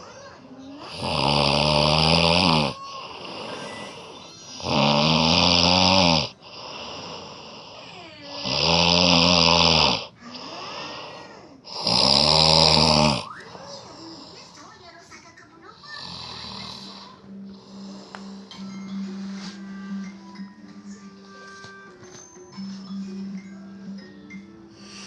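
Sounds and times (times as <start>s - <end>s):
quiet breaths: 0.6s - 25.0s
loud snoring: 0.8s - 13.4s, 15.8s - 19.1s.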